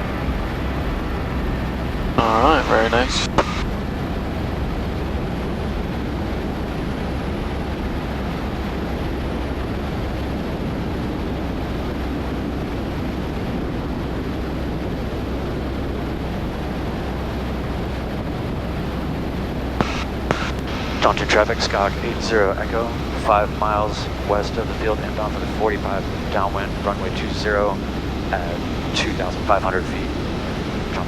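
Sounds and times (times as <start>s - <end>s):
airflow noise: 0.0s - 4.9s, 19.7s - 31.0s
light aircraft engine drone: 0.0s - 31.0s.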